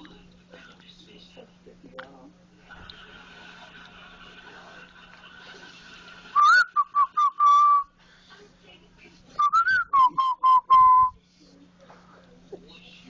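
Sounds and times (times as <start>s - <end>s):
person whistling: 6.4s - 7.9s, 9.4s - 11.2s.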